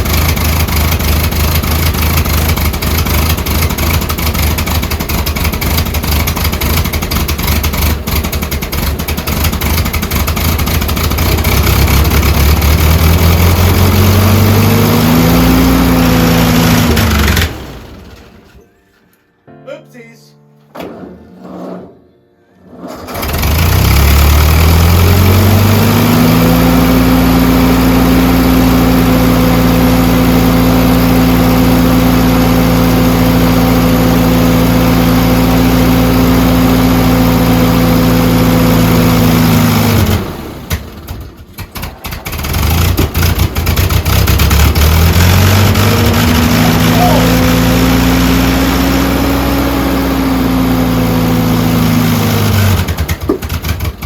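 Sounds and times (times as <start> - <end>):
tractor engine running: 0.0 - 18.6, 22.9 - 54.0.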